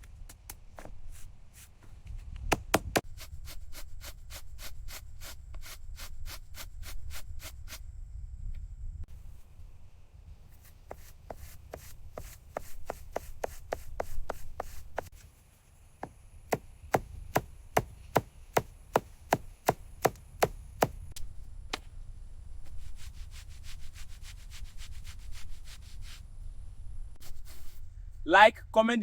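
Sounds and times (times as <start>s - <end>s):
low steady hum: 4.8s - 12.4s.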